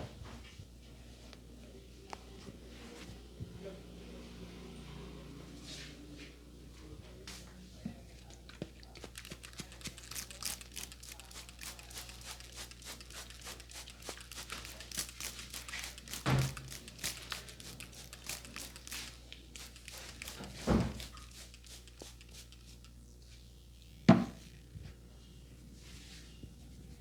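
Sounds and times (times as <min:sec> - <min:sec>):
crackling of hair handling: 0:08.7 - 0:23.0.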